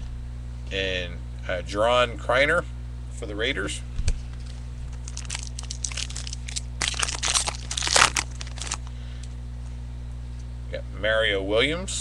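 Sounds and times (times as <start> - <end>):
steady electrical hum: 0.0 - 12.0
trading card packaging crinkling: 4.4 - 9.0.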